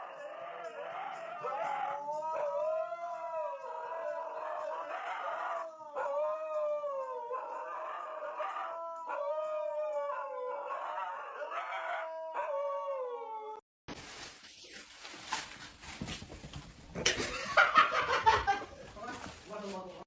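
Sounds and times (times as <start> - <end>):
animal howling: 0.0 - 13.6.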